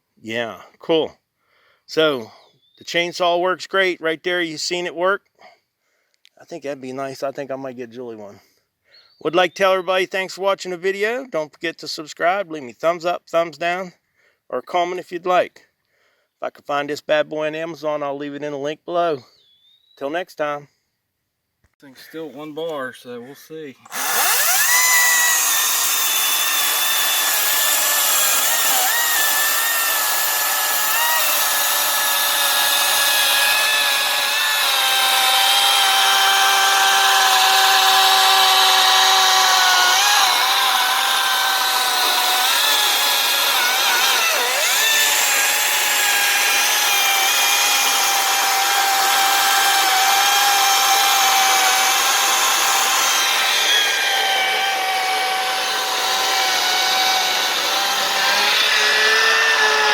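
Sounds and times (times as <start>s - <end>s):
electric chainsaw cutting wood: 23.8s - 59.9s.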